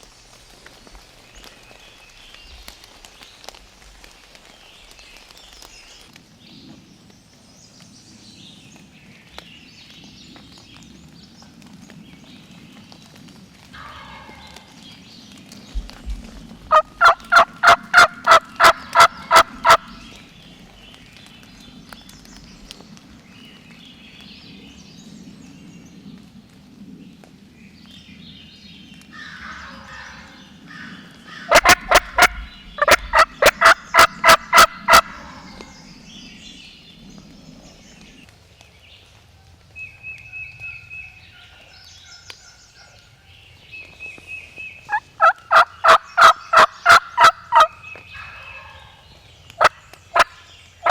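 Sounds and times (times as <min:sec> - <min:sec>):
songbirds singing: 0:13.8 - 0:50.9
turkey gobbling: 0:16.7 - 0:20.0, 0:29.3 - 0:35.7, 0:44.9 - 0:49.0, 0:49.6 - 0:50.9.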